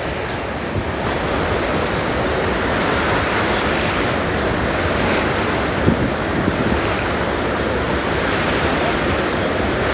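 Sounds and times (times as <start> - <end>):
waterfall roaring: 0.0 - 9.9
wind on microphone: 0.0 - 9.9.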